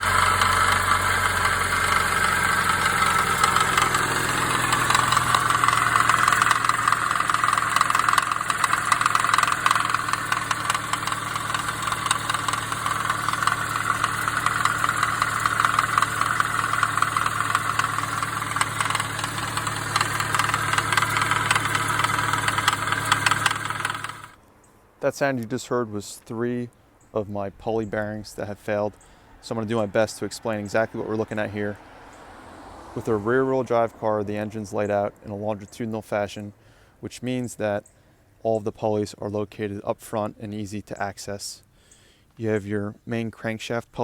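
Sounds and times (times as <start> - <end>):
car engine idling: 0.0 - 24.4, 28.9 - 35.7
pulley knocking rattle: 0.0 - 24.4.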